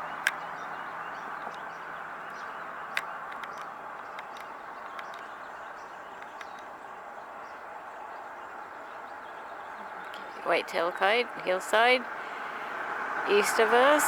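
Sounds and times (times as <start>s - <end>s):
outdoor background hiss: 0.0s - 14.0s
sharp clicks: 2.3s - 5.3s.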